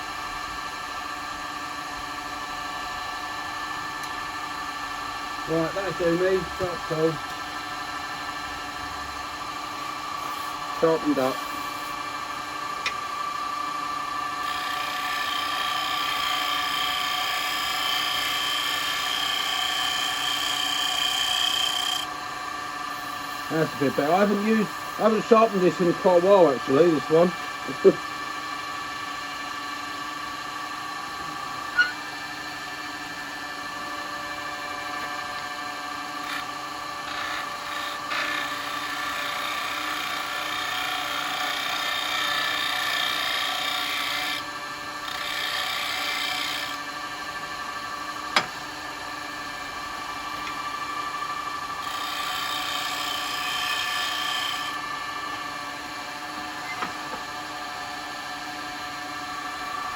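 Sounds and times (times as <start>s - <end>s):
wood lathe humming: 0.0s - 59.9s
turning tool cutting wood hiss: 13.7s - 22.1s, 22.8s - 28.2s, 36.2s - 46.9s, 50.1s - 55.5s.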